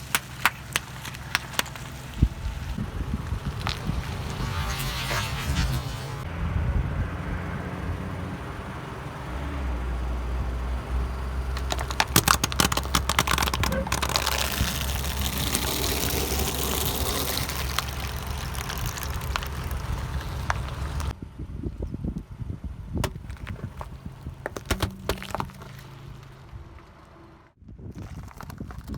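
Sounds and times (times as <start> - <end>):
tyre crushing objects: 0.0 - 5.4, 11.6 - 21.1, 23.0 - 26.6
sharp cracking: 0.0 - 6.2, 11.5 - 21.1, 23.0 - 27.0
car engine running: 0.0 - 27.5.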